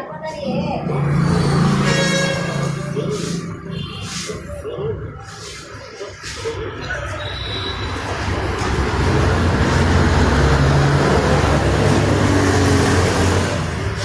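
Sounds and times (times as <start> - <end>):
vehicle passing by: 0.4 - 4.6, 7.9 - 14.0.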